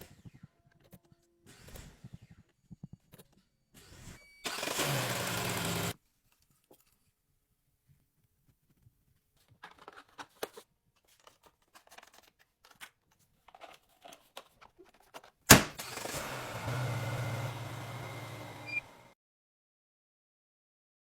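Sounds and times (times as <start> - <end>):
vehicle engine running: 15.8 - 19.1.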